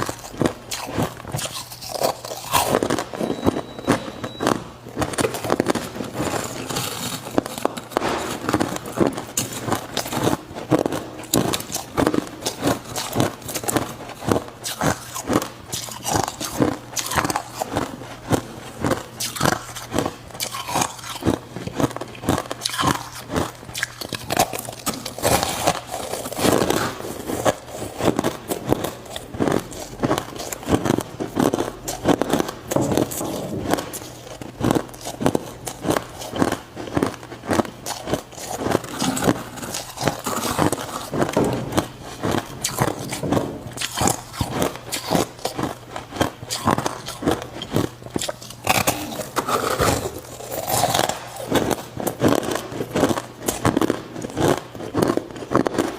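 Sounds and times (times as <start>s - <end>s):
ice crunching between teeth: 0.0s - 55.9s.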